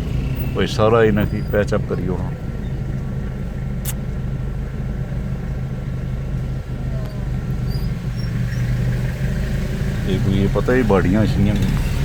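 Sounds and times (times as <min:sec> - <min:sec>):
vehicle engine humming: 0:00.0 - 0:12.0
sharp click: 0:03.8 - 0:04.0.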